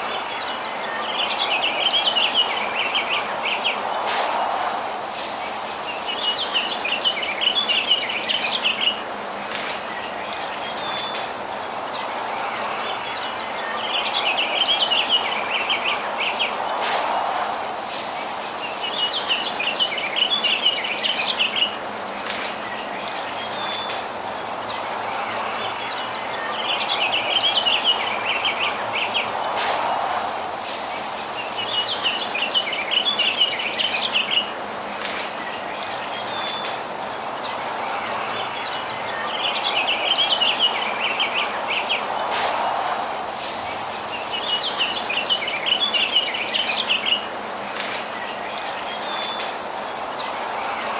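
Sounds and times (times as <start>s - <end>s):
songbirds chirping: 0.0s - 50.9s
distant outdoor noise: 1.2s - 7.4s, 12.0s - 20.0s, 21.8s - 46.7s.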